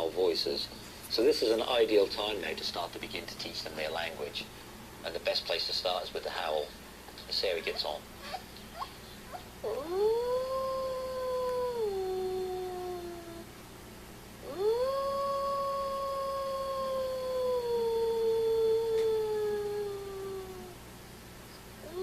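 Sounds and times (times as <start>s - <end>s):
dog howling: 8.8s - 13.5s, 14.4s - 20.8s.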